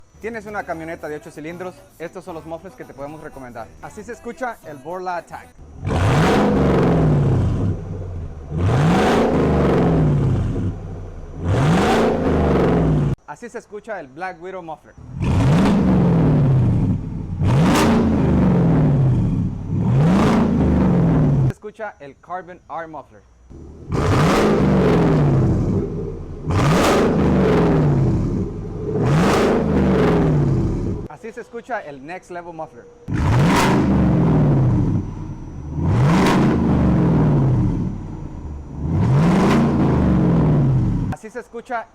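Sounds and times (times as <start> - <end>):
truck engine revving: 5.6 - 13.2, 15.0 - 21.6, 23.5 - 31.1, 32.3 - 41.2.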